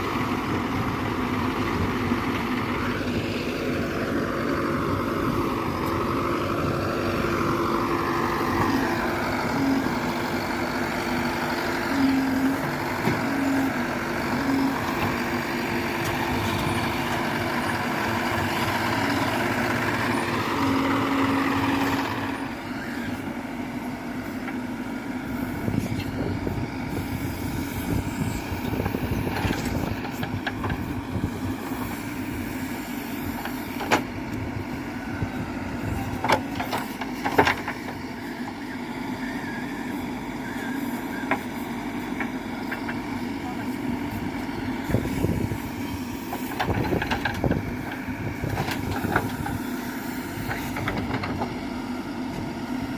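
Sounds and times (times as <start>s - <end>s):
diesel engines running: 0.0s - 52.9s.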